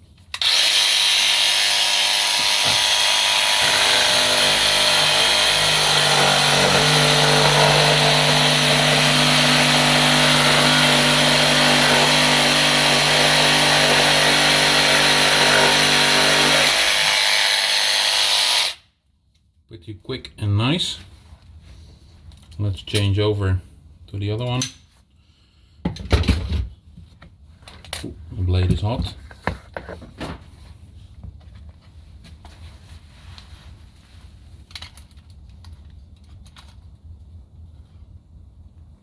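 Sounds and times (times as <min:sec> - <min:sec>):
jigsaw cutting: 0:00.4 - 0:18.8.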